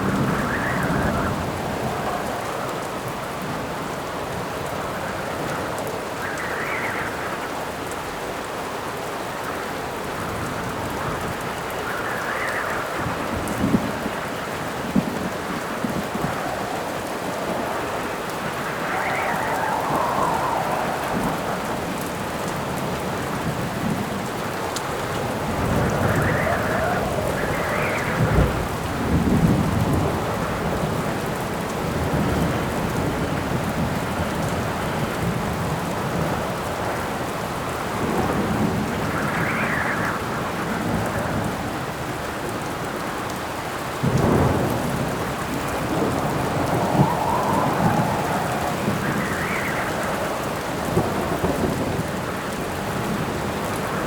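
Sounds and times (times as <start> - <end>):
steady rain: 0.0 - 54.0
wind gusts: 0.0 - 54.0
thunder rolling: 10.2 - 42.3, 44.0 - 54.0.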